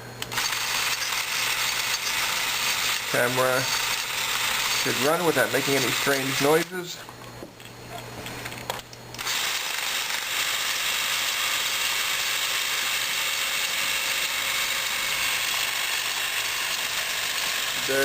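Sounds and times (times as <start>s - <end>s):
film camera clockwork motor whirring: 0.2s - 6.7s, 9.2s - 18.0s.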